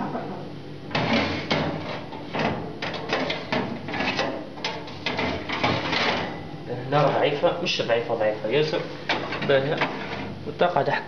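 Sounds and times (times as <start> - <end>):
oven door shutting: 0.9 - 7.8, 8.6 - 10.4
oven door and rack clatter: 0.9 - 8.0, 8.6 - 10.4.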